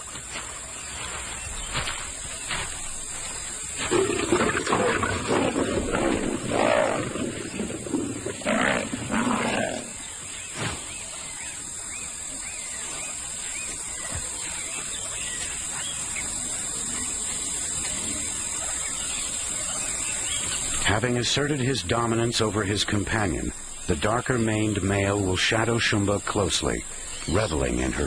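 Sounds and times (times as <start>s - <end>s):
steady high hiss: 0.0s - 28.0s
lions snarling and growling: 3.8s - 10.1s.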